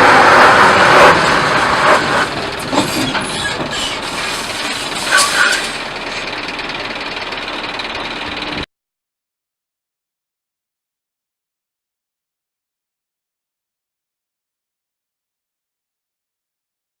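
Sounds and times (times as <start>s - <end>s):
car crash impact: 1.0s - 5.9s
metal knocks and clanks: 1.2s - 6.4s.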